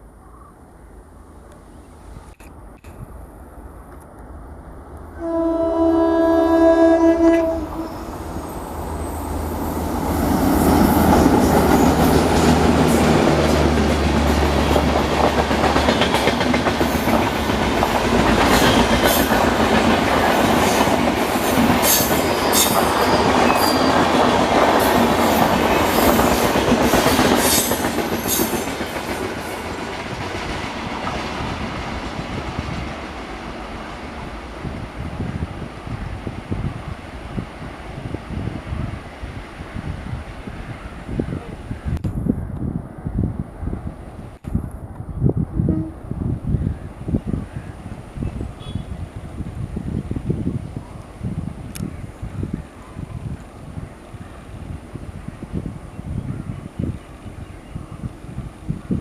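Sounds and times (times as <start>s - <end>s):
locomotive engine rumbling: 4.5s - 20.3s
locomotive horn: 5.2s - 8.5s, 45.6s - 46.1s
train wheels clattering over rail joints: 10.8s - 31.4s.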